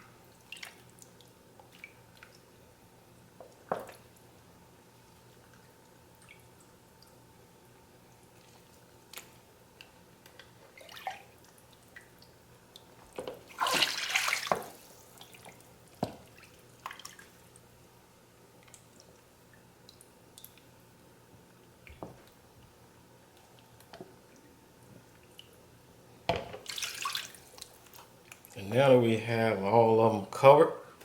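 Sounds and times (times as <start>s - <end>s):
liquid sloshing in a bowl: 0.2s - 2.6s, 8.2s - 17.6s, 26.4s - 28.6s
liquid splash: 13.5s - 15.6s, 26.6s - 28.6s.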